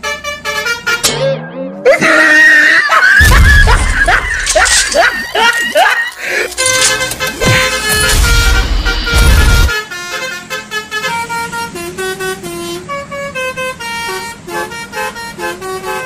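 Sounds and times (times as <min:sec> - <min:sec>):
multi-tone bus horn tune: 0:00.0 - 0:01.8, 0:06.5 - 0:16.0
horn blast: 0:06.6 - 0:16.0.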